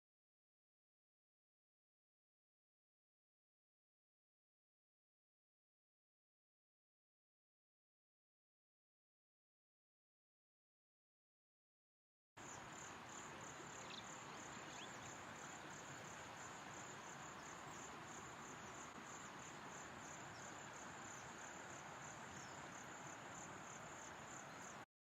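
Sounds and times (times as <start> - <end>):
background hiss: 12.4 - 24.9
insect chirping: 12.4 - 24.9.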